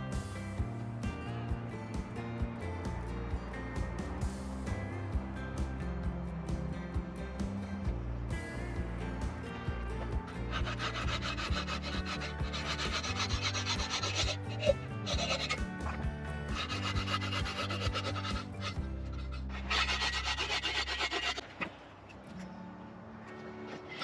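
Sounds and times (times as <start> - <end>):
background music with bass: 0.0 - 21.0
tool rasping wood: 10.5 - 21.4.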